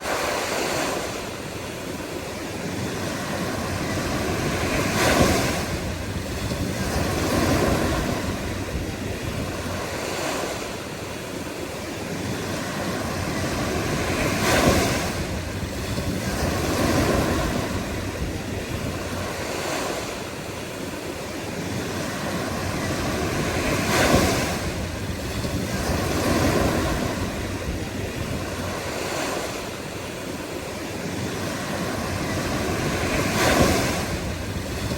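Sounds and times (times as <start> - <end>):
ocean waves breaking: 0.0 - 34.9.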